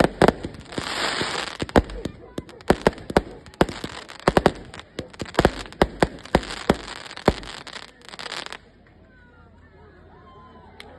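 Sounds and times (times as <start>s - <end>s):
fireworks bangs: 0.0s - 8.6s
fireworks crackling: 0.0s - 8.8s.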